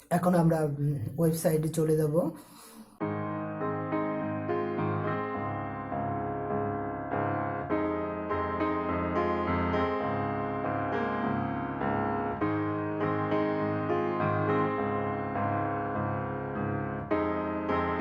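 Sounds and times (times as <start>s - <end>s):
piano music: 3.0s - 18.0s.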